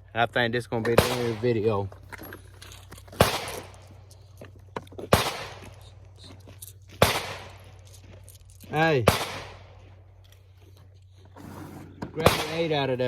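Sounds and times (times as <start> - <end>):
gunshots with echo: 1.0 - 1.7, 3.2 - 3.8, 5.1 - 5.7, 7.0 - 7.6, 9.0 - 9.7, 12.2 - 12.8.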